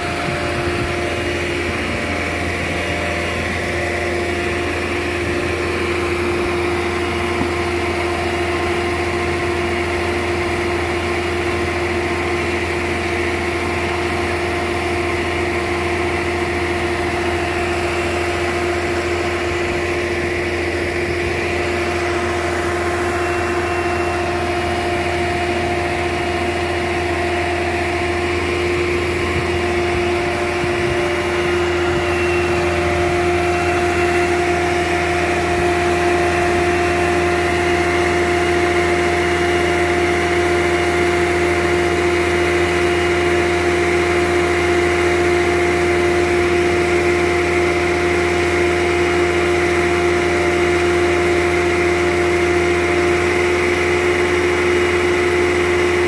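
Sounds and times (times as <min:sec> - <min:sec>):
engine running with whine: 0:00.0 - 0:56.0.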